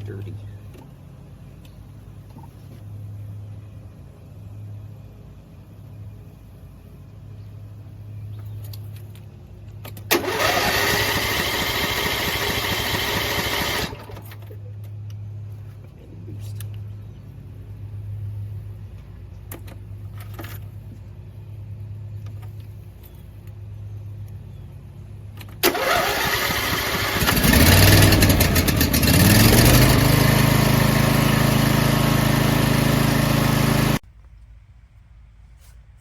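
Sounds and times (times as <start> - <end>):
car engine starting and idling: 9.9 - 14.6, 25.3 - 34.0.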